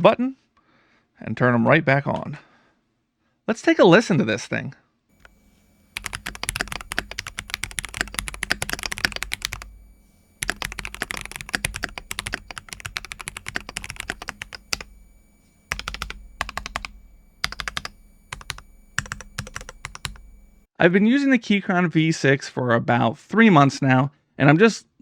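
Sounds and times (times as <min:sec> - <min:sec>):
mechanical keyboard typing: 0:05.2 - 0:20.7.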